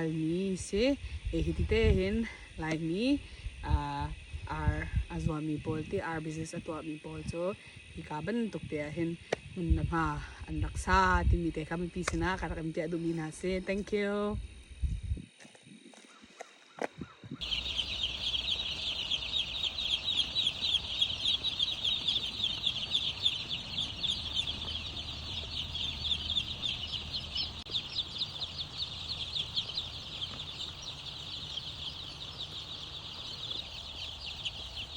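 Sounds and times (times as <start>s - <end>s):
chicks cheeping: 17.4s - 34.9s.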